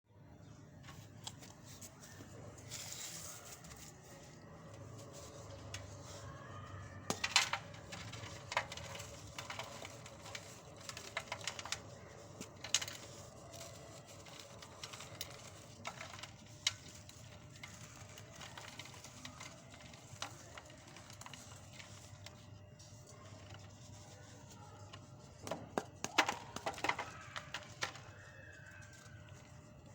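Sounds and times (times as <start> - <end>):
hardened cement crumbling: 0.9 - 29.9.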